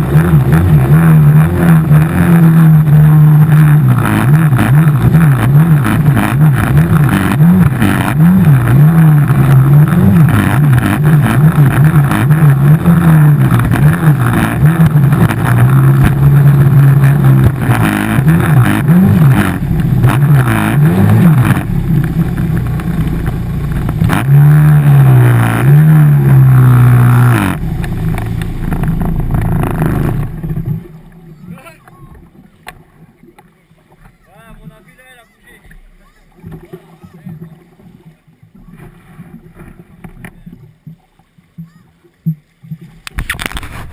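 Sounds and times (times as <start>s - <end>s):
jetski engine revving: 0.0s - 40.8s, 43.0s - 43.9s.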